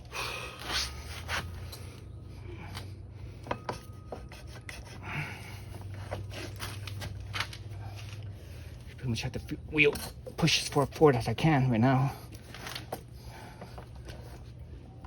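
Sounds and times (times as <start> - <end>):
wheel parts scraping and rubbing: 0.5 - 10.9.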